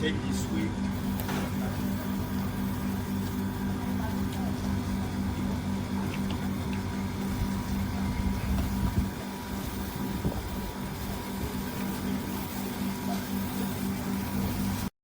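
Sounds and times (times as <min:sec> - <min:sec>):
motor humming: 0:00.0 - 0:14.9.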